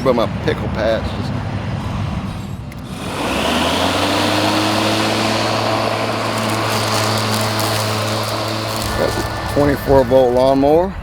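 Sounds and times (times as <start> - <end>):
electric lawnmower whining: 2.7 - 10.5.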